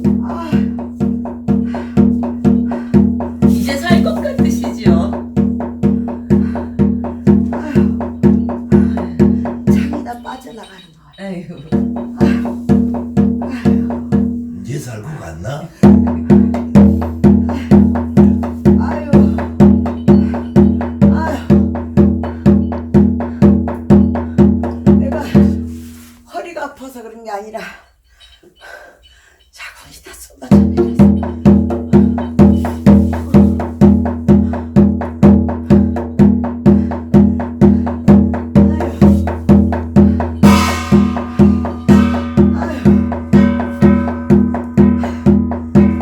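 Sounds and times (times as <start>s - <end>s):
drum beaten in steady rhythm: 0.0s - 26.3s, 30.2s - 46.0s
cymbal crash: 40.3s - 46.0s.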